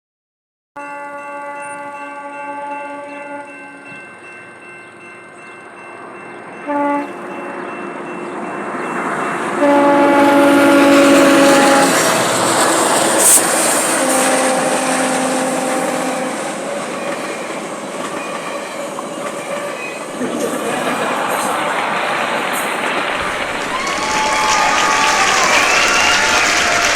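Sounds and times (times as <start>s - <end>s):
train horn blasts: 0.8s - 4.0s, 6.6s - 7.8s, 9.6s - 17.6s
passing train rumble: 0.8s - 26.9s.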